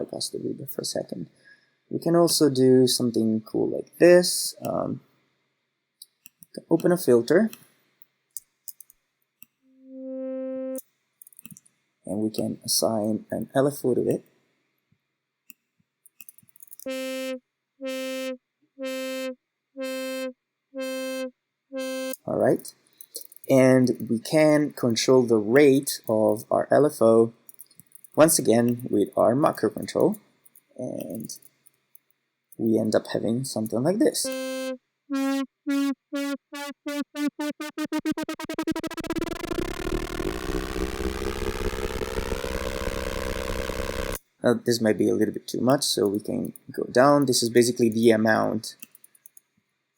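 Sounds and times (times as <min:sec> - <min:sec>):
pulsing buzzy synthesizer note: 0:09.8 - 0:10.8, 0:16.8 - 0:22.2, 0:34.2 - 0:44.2.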